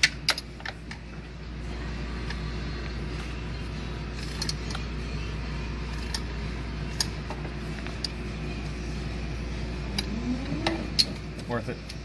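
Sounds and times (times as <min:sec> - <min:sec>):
steady low hum: 0:00.0 - 0:12.0
ratcheting wrench clicks: 0:04.2 - 0:04.8.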